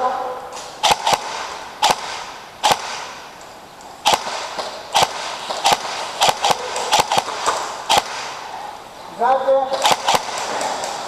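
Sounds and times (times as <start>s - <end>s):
airsoft gun shots: 0.6s - 3.2s, 4.0s - 8.5s, 9.6s - 11.0s.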